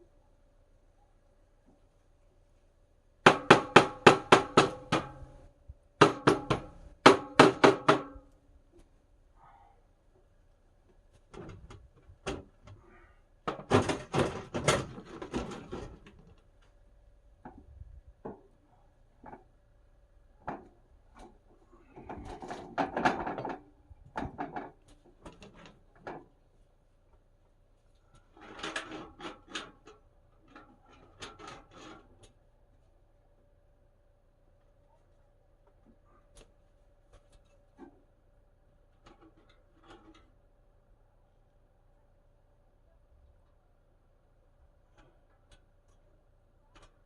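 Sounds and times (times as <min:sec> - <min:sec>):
metal flue pipe knocking and scraping: 0:03.3 - 0:08.9, 0:11.1 - 0:16.6, 0:17.4 - 0:19.6, 0:20.4 - 0:26.4, 0:28.0 - 0:32.5, 0:37.1 - 0:38.2, 0:38.9 - 0:40.6.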